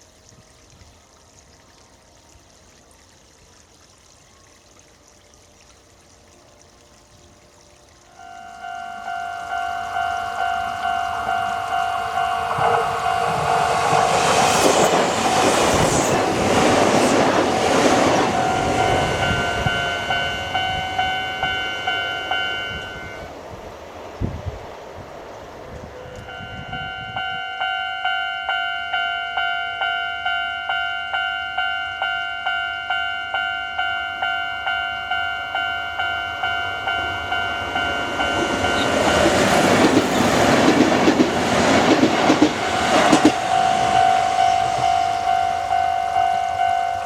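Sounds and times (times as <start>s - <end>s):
level crossing bell ringing: 8.2s - 14.1s, 18.2s - 23.2s, 26.3s - 39.6s, 42.4s - 47.0s
train wheels clattering: 37.6s - 46.0s.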